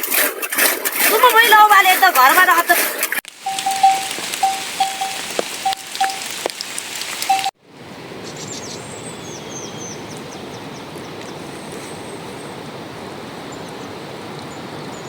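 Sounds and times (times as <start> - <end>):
rushing like flowing water: 0.0 - 15.0
short single-pitch notes: 3.5 - 6.3
high falling bird chirps: 3.5 - 6.4.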